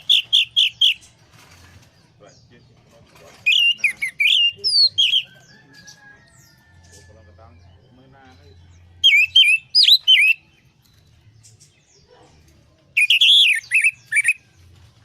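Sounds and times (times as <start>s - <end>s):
thrush singing whistled phrases: 0.0s - 1.0s, 9.0s - 10.4s, 13.0s - 14.4s.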